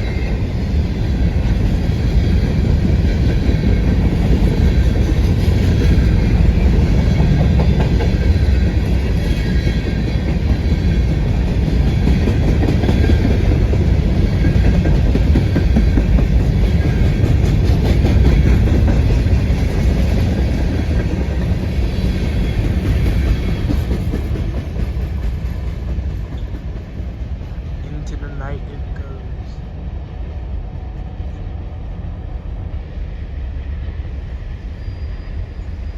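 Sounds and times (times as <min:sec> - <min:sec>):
heavy train rumble: 0:00.0 - 0:35.9
train wheels clattering over rail joints: 0:01.2 - 0:27.8.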